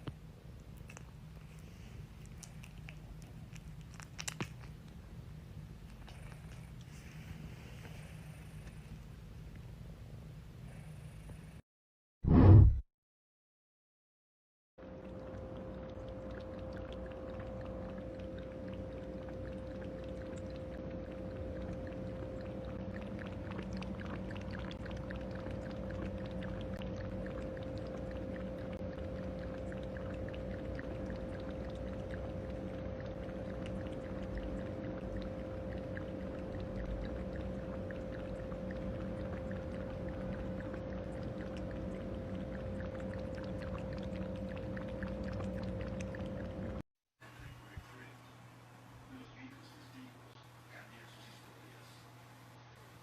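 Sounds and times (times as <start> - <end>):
constant hum: 0.0 - 11.6, 14.8 - 53.0
cat purring: 5.9 - 8.9.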